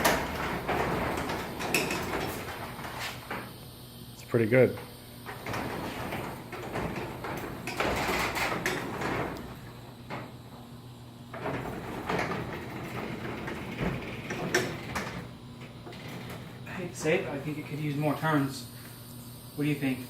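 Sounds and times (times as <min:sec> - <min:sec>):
garage door clicks and clanks: 0:00.0 - 0:03.6, 0:05.2 - 0:17.5
garage door rollers rumbling: 0:00.0 - 0:03.6, 0:04.7 - 0:18.5.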